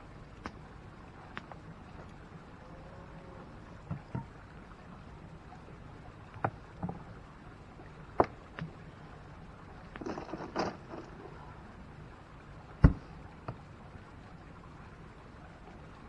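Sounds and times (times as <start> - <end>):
low background hiss: 0.0 - 16.0
camp gear knocks and clicks: 10.0 - 11.4.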